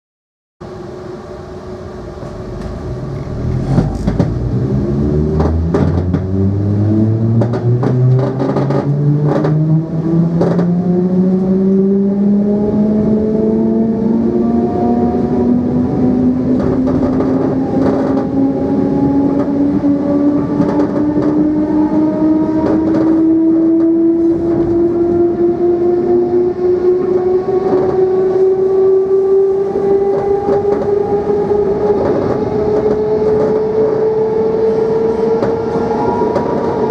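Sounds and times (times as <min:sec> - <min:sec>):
electric train motors whining: 0:00.6 - 0:36.9
sharp clicks and knocks: 0:03.8 - 0:04.4, 0:05.4 - 0:06.4, 0:07.4 - 0:09.6, 0:20.6 - 0:21.4.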